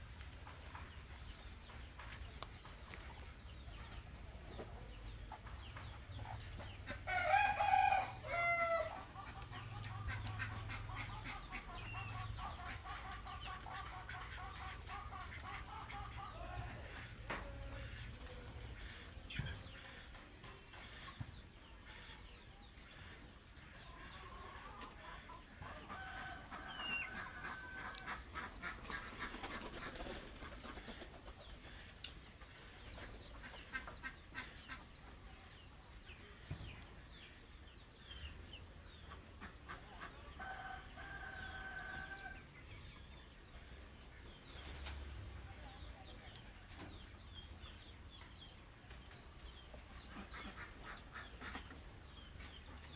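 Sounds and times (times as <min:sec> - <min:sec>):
chickens clucking: 0:00.0 - 0:52.9
rooster crowing: 0:07.1 - 0:09.0.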